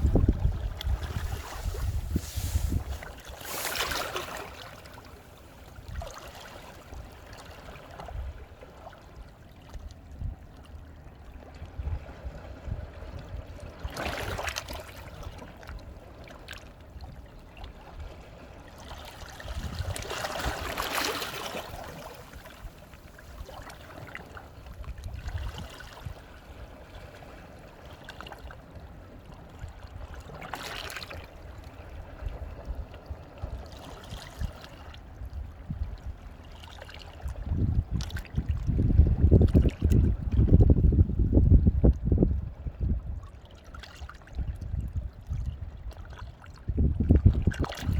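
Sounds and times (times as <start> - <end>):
low rumbling surf surge: 0.0 - 5.6
waves washing over rocks: 0.0 - 6.6, 19.5 - 23.9.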